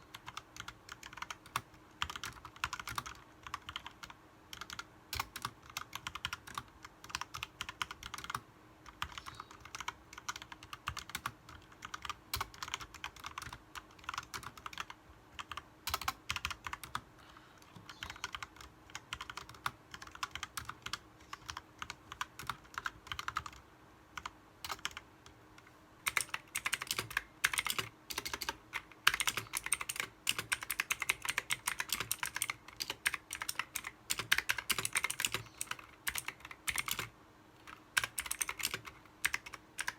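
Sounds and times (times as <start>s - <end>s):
fast typing on mechanical keyboard: 0.1s - 17.0s, 17.8s - 23.6s, 24.2s - 25.4s, 26.0s - 39.9s.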